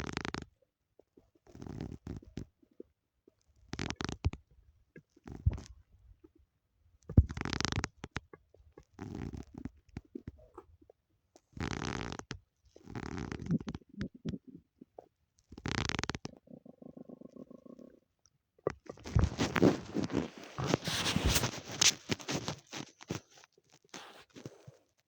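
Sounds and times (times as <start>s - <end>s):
stomach growling: 7.1s - 24.9s.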